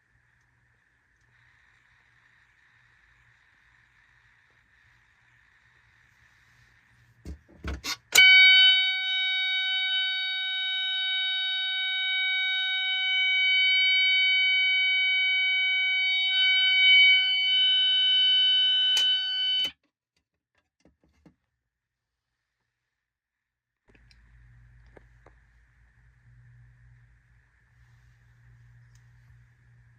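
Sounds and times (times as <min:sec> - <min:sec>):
fire alarm continuous tone: 0:08.1 - 0:19.8
clicks: 0:18.7 - 0:19.7.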